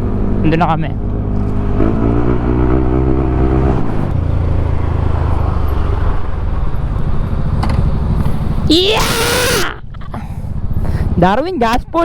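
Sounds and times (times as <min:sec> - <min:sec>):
motorcycle engine running: 0:03.9 - 0:09.8.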